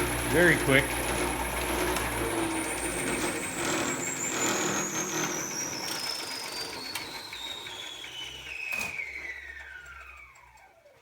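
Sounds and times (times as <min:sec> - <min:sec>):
low mechanical hum: 0:00.0 - 0:06.2.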